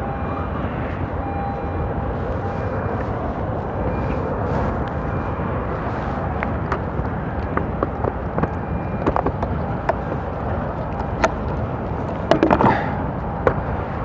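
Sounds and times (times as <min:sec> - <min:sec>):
steady rushing noise: 0:00.0 - 0:14.0.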